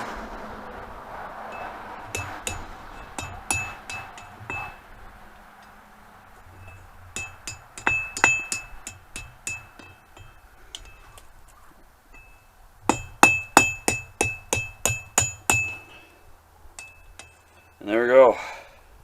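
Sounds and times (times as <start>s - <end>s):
hammer striking steel on anvil: 1.5s - 4.9s, 6.6s - 11.2s, 12.2s - 16.0s, 16.8s - 17.8s.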